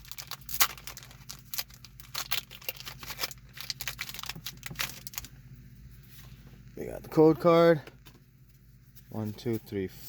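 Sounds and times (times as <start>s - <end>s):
foil wrapper crinkling: 0.0s - 5.4s.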